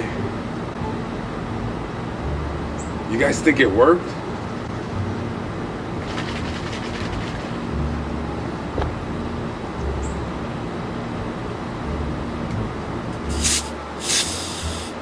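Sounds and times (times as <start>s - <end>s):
low background rumble: 0.0s - 14.9s
short hiss: 13.3s - 15.0s.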